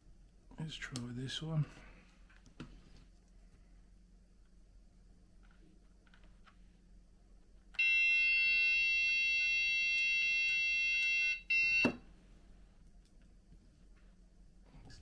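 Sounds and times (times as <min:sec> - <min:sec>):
high-pitched electronic buzzer: 0:07.8 - 0:12.0.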